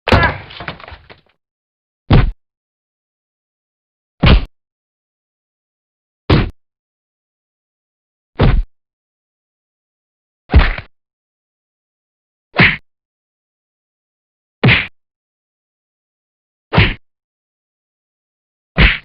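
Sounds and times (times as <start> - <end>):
punch sound effects: 4.2 - 4.5, 8.4 - 8.7.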